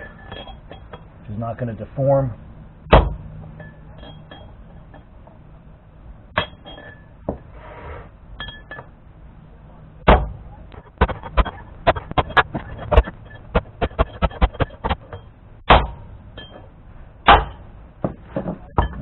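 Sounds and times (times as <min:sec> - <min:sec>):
hammer striking metal punch: 0:02.9 - 0:04.6, 0:06.4 - 0:07.0, 0:10.0 - 0:17.7.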